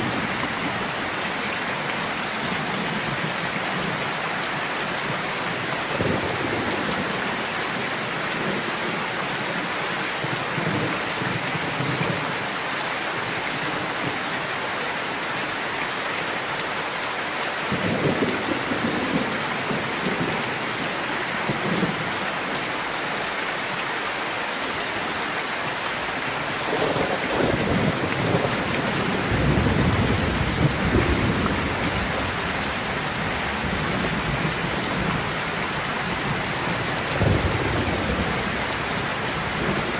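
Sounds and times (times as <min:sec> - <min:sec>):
steady rain falling: 0:00.0 - 0:39.9
thunder rumbling: 0:26.7 - 0:39.9.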